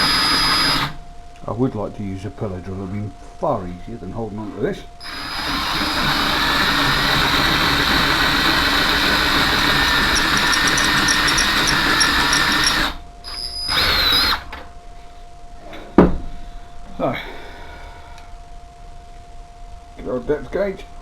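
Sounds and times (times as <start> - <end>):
electric drill boring metal: 0.0 - 1.0, 5.0 - 14.6.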